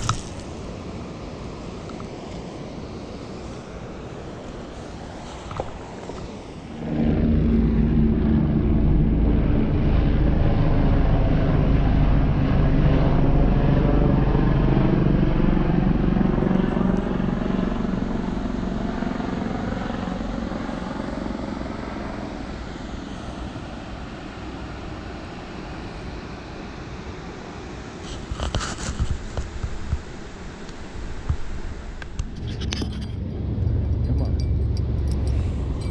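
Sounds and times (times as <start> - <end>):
propeller aircraft engine droning: 0.0 - 35.9
light clinks: 32.3 - 35.9.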